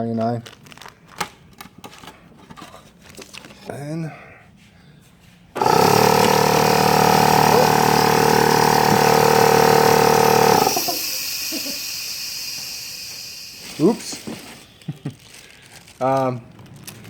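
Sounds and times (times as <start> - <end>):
loud machine hum with hiss: 5.6 - 14.6.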